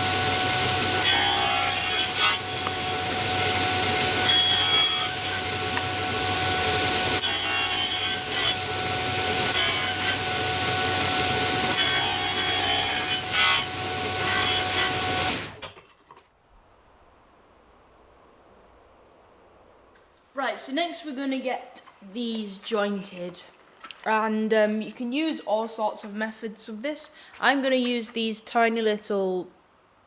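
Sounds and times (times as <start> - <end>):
woodworking saw cutting: 0.0 - 15.8.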